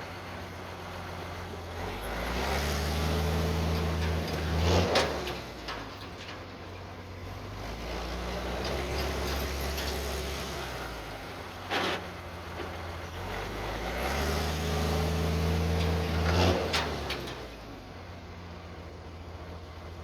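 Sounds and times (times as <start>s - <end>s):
truck diesel engine revving: 0.0s - 5.6s, 7.2s - 17.5s.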